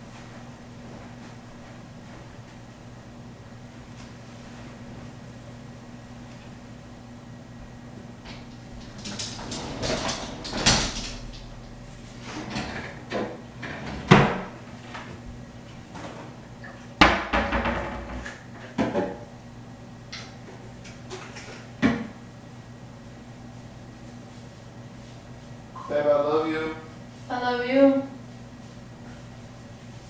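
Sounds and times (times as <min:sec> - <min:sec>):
steady low hum: 0:00.0 - 0:17.3
doors or cupboards knocking shut: 0:13.9 - 0:14.6, 0:17.0 - 0:18.2.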